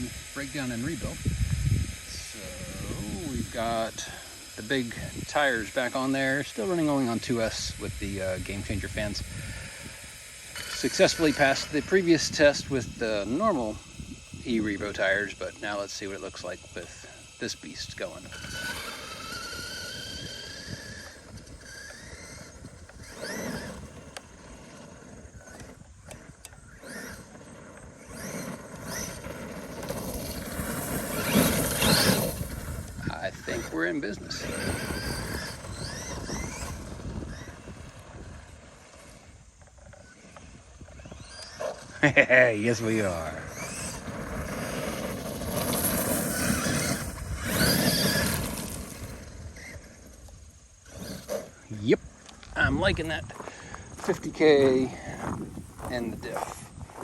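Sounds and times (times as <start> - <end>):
electric motor whining: 0.0 - 57.0
tires rushing on ground: 18.1 - 39.6, 41.0 - 51.8.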